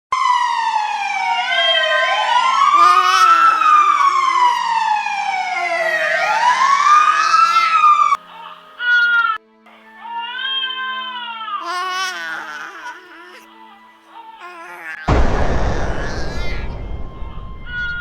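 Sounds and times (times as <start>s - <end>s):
emergency siren wailing: 0.1s - 8.7s.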